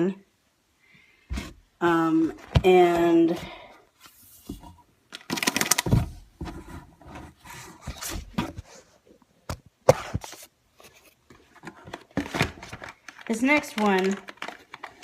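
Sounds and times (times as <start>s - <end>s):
snack packaging crinkling: 5.1s - 5.9s, 11.8s - 15.0s.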